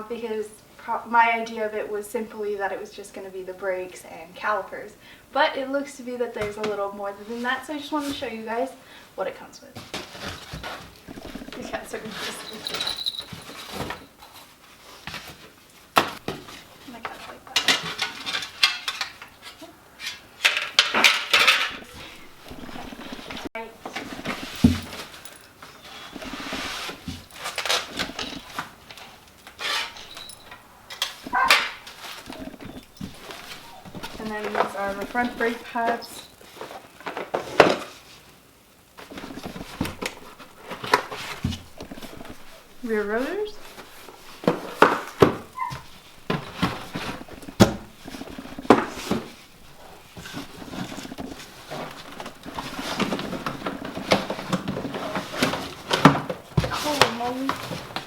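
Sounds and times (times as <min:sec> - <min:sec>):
packaging rustling: 0:09.9 - 0:16.8, 0:21.8 - 0:38.3, 0:38.9 - 0:58.0
scraping and rubbing: 0:10.0 - 0:15.5, 0:16.9 - 0:36.9, 0:39.0 - 0:58.0
boxed parts knocking: 0:22.4 - 0:25.5.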